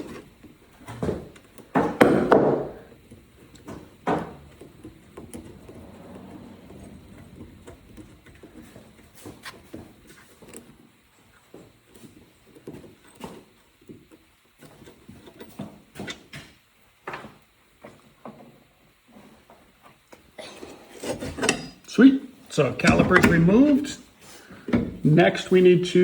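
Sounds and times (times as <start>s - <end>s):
hand tools clicking and knocking: 21.0s - 21.8s, 22.8s - 23.8s.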